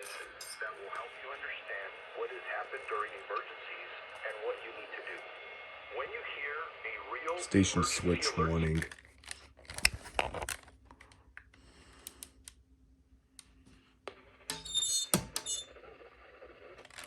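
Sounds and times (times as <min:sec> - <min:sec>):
broadcast voice: 0:00.0 - 0:09.0.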